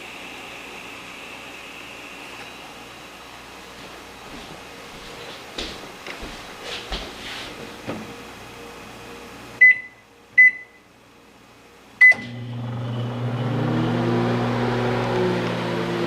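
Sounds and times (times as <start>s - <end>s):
microwave running hum: 7.6s - 16.0s
microwave keypad beeps: 9.6s - 10.8s.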